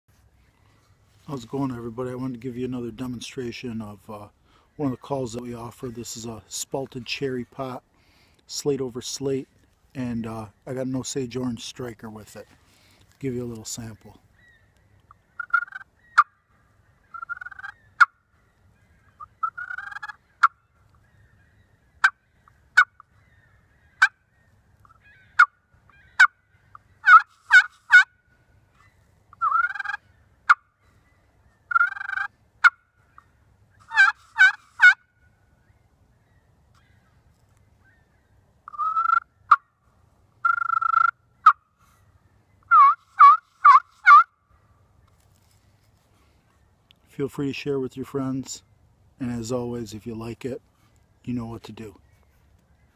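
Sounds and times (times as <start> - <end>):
turkey call imitating hen: 15.4 - 16.4, 17.1 - 18.2, 19.2 - 20.6, 27.0 - 28.1, 29.4 - 30.6, 31.7 - 32.8, 33.8 - 35.0, 38.7 - 39.7, 40.4 - 41.6, 42.7 - 44.3.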